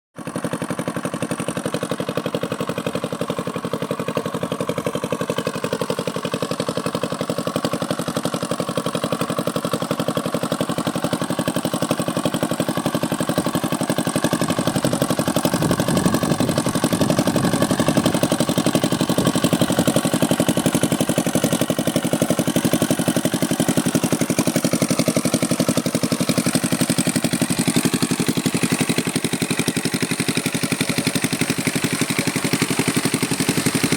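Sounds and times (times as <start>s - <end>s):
water pump engine running: 0.2s - 33.9s
water gushing: 14.5s - 33.9s.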